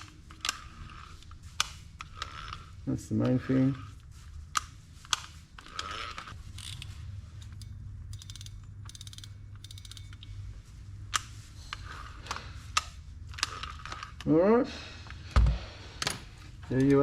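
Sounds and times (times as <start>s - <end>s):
fishing reel clicking: 7.6s - 10.3s.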